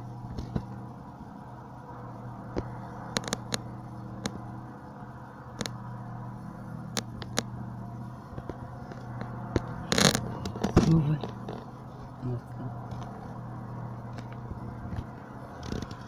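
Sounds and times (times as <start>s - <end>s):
low droning hum: 0.0s - 16.0s
sharp clicks: 2.6s - 4.4s.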